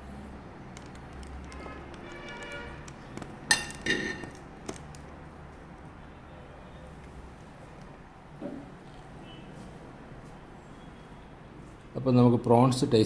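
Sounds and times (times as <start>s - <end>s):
tableware clinking on a plate: 3.5s - 4.4s.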